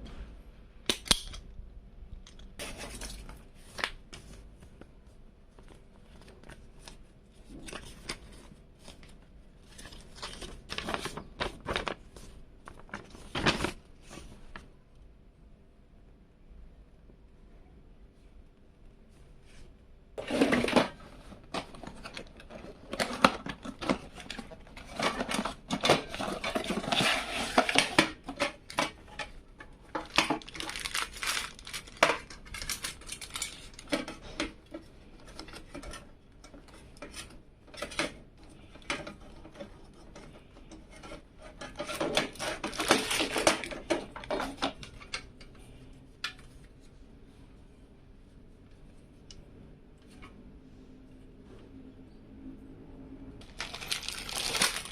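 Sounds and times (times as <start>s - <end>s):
parts scraping and clattering: 2.3s - 3.5s, 20.2s - 46.8s, 53.4s - 54.9s.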